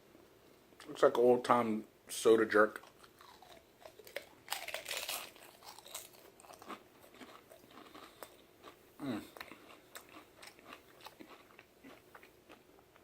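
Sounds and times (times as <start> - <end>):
chewing crackles: 2.8 - 13.0
crisps crunching: 2.9 - 8.8.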